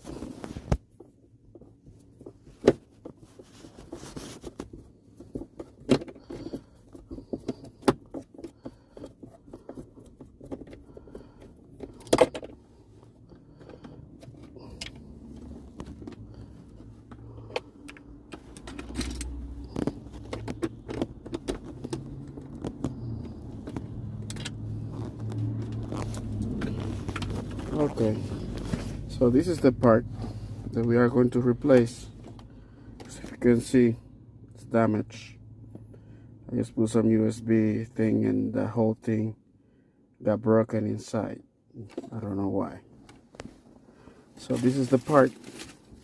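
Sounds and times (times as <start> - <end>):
hand tools clicking and tapping: 17.1 - 24.6.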